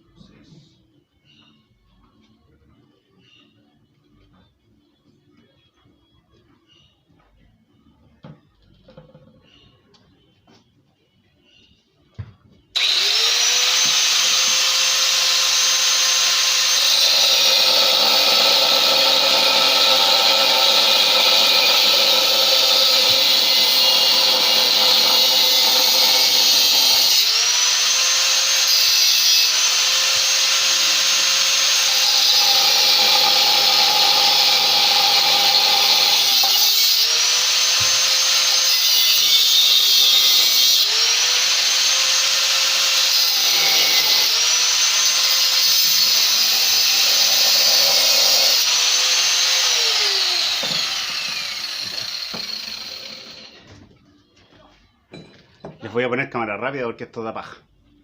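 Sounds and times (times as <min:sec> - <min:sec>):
cut-off tool cutting metal tube: 0:12.8 - 0:53.6.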